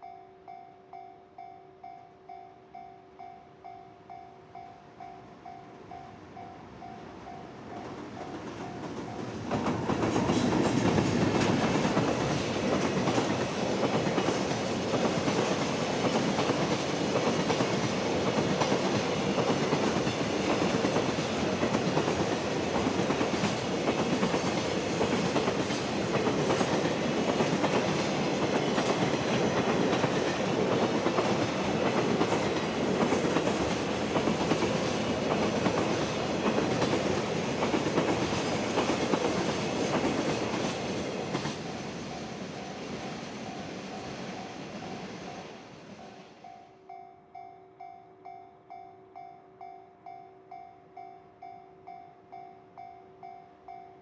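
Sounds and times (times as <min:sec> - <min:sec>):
freight train passing: 0:00.9 - 0:54.0
wheel on rail noise: 0:04.5 - 0:46.6.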